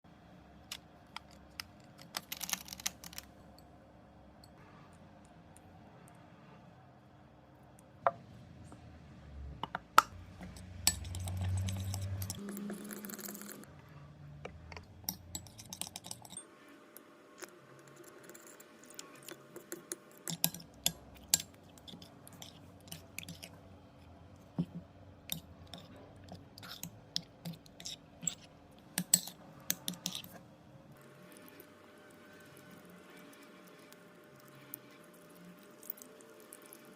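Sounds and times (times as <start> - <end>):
low rumbling and hiss: 3.4 - 15.3.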